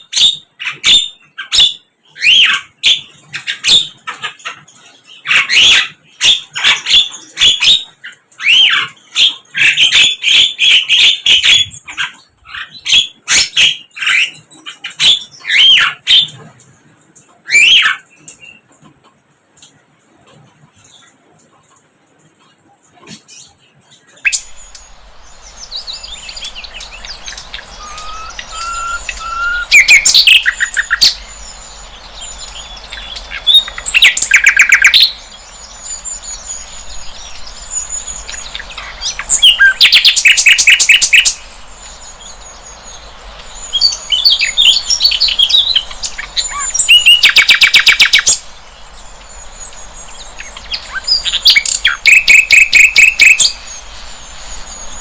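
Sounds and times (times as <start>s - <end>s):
soft bird chirps and whistles: 17.5s - 18.7s, 23.0s - 55.0s
flycatcher trilled song: 24.4s - 55.0s.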